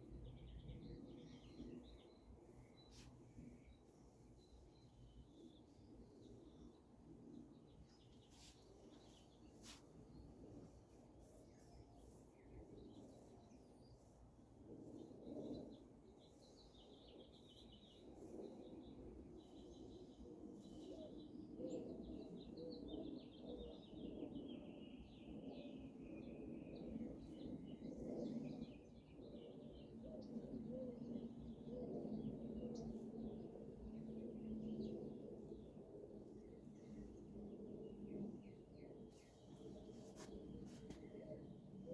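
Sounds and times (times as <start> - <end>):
faint birds chirping: 0.0 - 41.9
rubbing of head massage: 8.3 - 10.0, 39.9 - 41.1.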